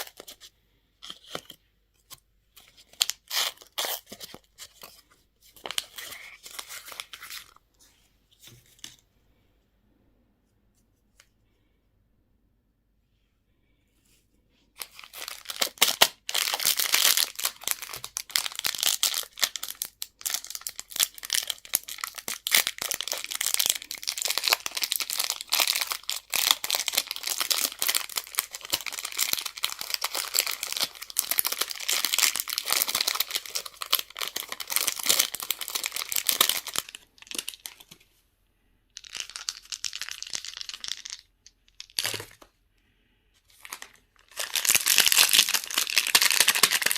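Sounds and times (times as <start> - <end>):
candy wrapper crinkling: 0.0 - 1.6, 2.6 - 5.0, 5.6 - 7.6, 14.8 - 38.0, 39.0 - 42.5, 43.5 - 46.9.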